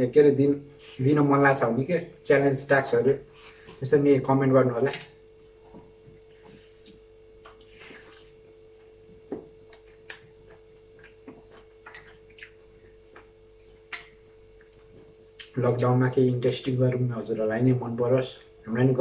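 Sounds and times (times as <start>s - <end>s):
faint steady hum: 0.0s - 19.0s
chewing clicks and smacks: 8.8s - 15.8s.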